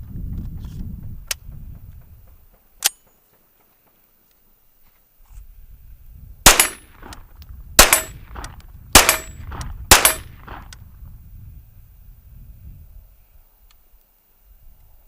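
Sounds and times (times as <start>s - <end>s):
gunshots with echo: 6.5s - 7.2s, 7.8s - 10.7s.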